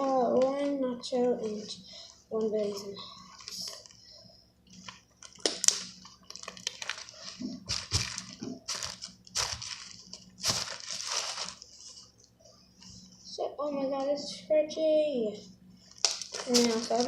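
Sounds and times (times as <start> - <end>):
slime crackling and squishing: 0.0 - 4.0, 4.8 - 11.8, 15.9 - 17.0.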